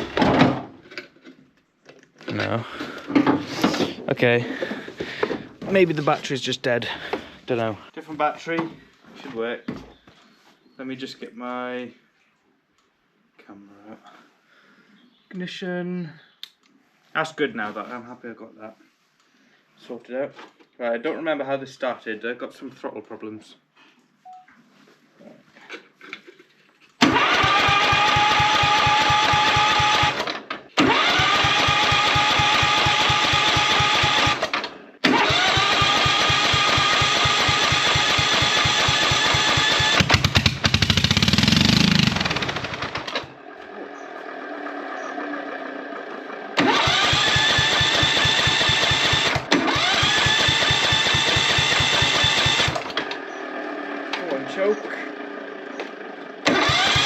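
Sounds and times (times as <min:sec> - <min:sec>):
electric starter cranking engine: 0:27.0 - 0:43.4, 0:44.2 - 0:57.0.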